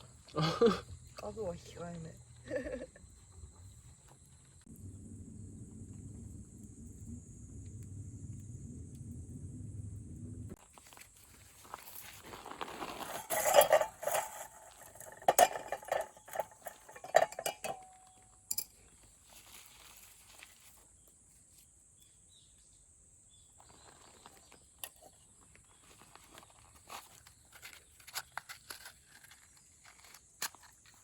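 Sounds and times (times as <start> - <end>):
faint handling sounds: 10.6 - 21.7
metal cookware clinking: 13.2 - 18.7.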